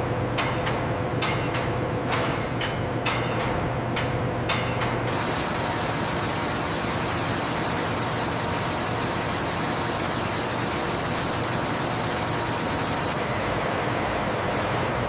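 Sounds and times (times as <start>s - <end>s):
factory machinery running: 0.0s - 15.0s
high-pitched machine whines: 5.1s - 14.2s.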